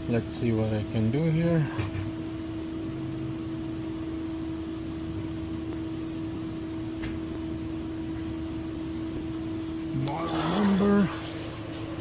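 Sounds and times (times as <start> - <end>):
refrigerator fan motor humming: 0.0 - 12.0.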